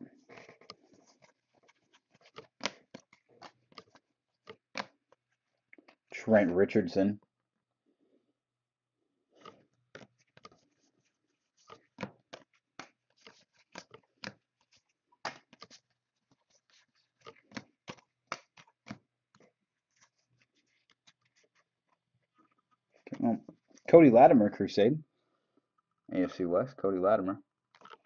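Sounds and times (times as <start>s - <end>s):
trading cards snapping and clicking: 15.2s - 15.8s, 17.2s - 19.0s.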